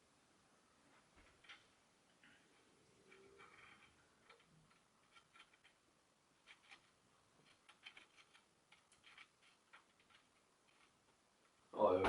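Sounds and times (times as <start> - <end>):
small metal parts clicking: 3.0 - 5.8, 6.4 - 11.0.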